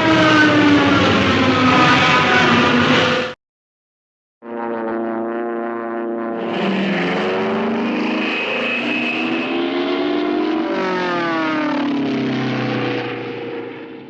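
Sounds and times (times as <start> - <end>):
wailing dive siren: 0.0 - 3.3, 4.4 - 14.0.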